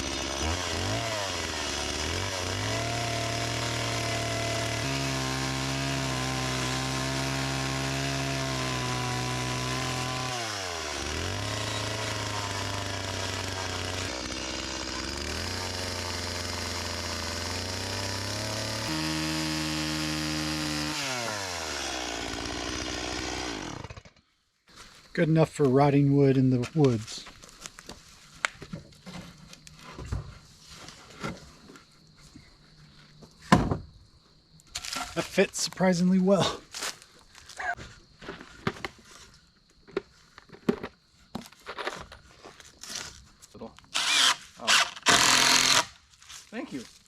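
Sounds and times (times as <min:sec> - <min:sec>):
chainsaw running at high revs: 0:00.0 - 0:24.1, 0:44.0 - 0:45.9.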